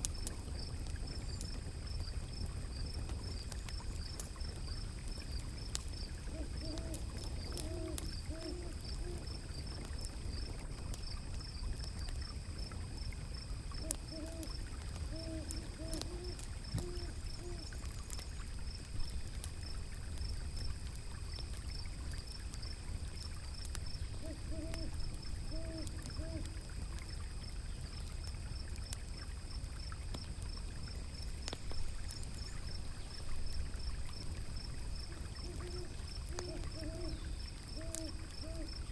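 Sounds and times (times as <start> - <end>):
flowing water: 0.0 - 38.9
wood fire crackling: 0.0 - 38.9
owl hooting: 6.3 - 9.3, 13.8 - 17.7, 24.2 - 26.6, 35.4 - 38.8.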